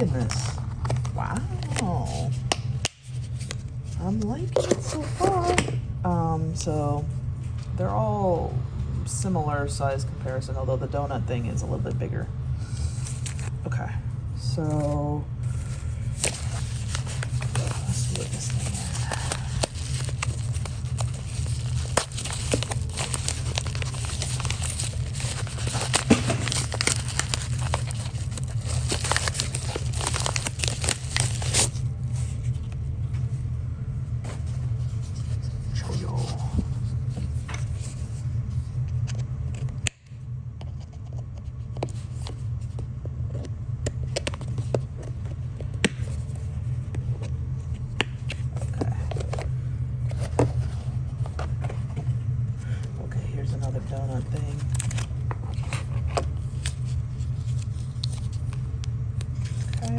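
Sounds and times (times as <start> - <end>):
steady low hum: 0.0 - 59.9
plastic packaging tearing and crinkling: 15.5 - 32.3, 54.5 - 58.6.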